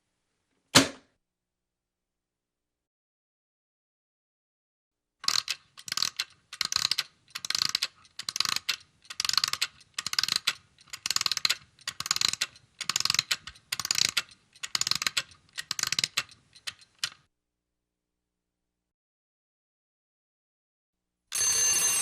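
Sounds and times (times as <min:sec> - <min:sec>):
mechanism ratcheting clicks: 0:05.2 - 0:17.3.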